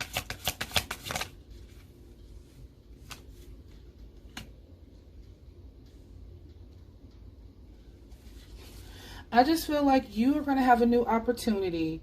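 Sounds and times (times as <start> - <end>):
cards being shuffled: 0.0 - 1.9, 3.0 - 4.5.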